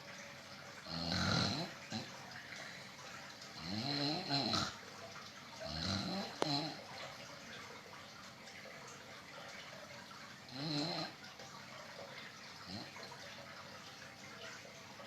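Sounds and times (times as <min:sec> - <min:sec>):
loud fluttering snores: 0:00.8 - 0:02.1, 0:03.6 - 0:04.8, 0:05.6 - 0:06.8, 0:10.5 - 0:11.2.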